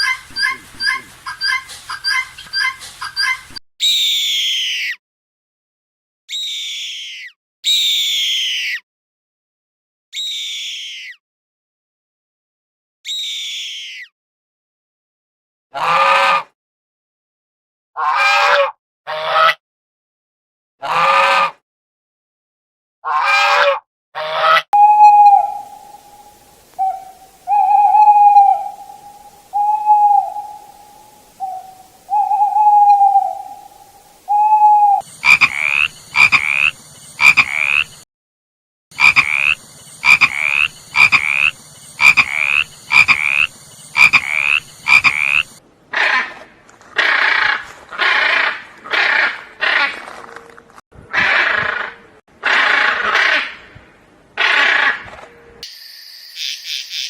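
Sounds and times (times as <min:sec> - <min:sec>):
frogs croaking: 0:24.8 - 0:38.0, 0:38.9 - 0:45.6, 0:55.6 - 0:57.0.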